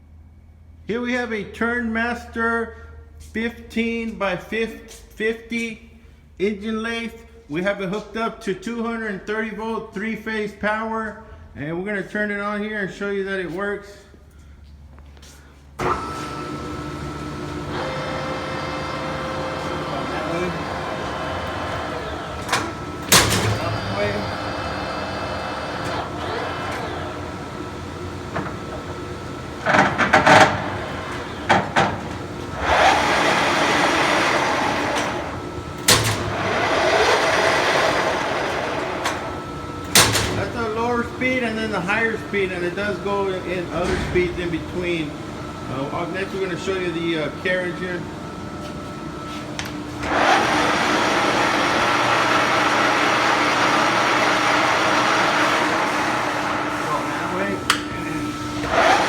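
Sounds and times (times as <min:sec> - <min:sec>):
lathe motor and gearbox whine: 0:15.8 - 0:59.0.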